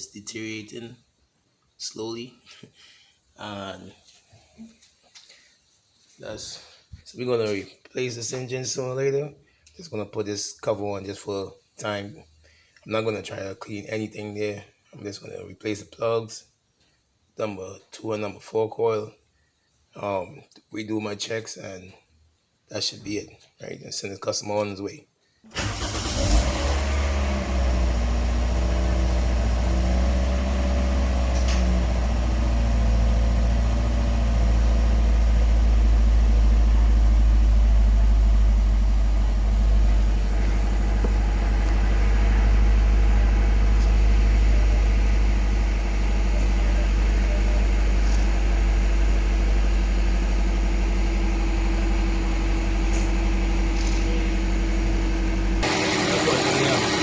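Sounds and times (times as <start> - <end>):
car engine idling: 25.6 - 57.0.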